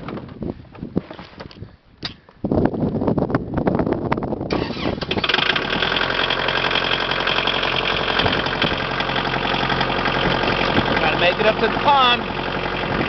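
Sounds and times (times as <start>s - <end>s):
engine cranking and running: 4.5s - 13.0s.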